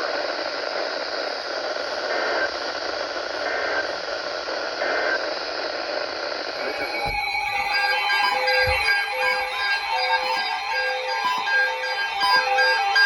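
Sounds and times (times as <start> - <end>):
radio static hiss: 0.0 - 7.6.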